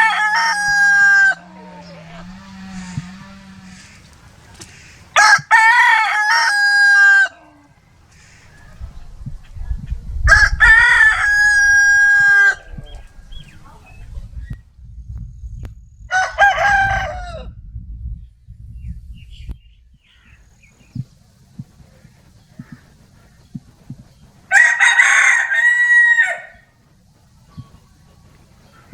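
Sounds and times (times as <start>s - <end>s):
low rumble: 0.0s - 5.2s, 7.7s - 24.4s
rooster crowing: 0.0s - 8.9s, 10.2s - 13.4s, 16.1s - 17.6s, 24.5s - 26.7s.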